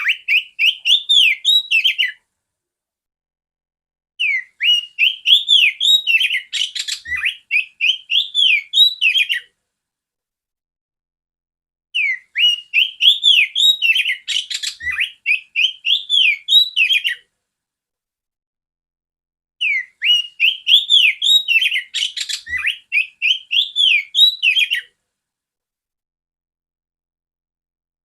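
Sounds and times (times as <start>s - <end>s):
bird song with whistled notes: 0.0s - 2.2s, 4.2s - 9.6s, 11.9s - 17.3s, 19.6s - 25.0s.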